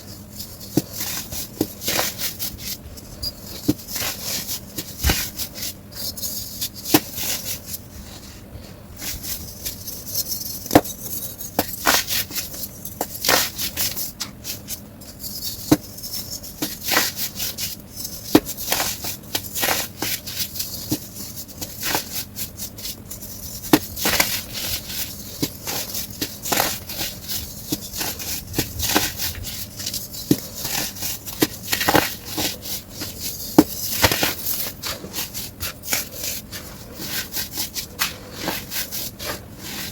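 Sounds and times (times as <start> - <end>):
baking soda crunching: 16.7 - 39.9.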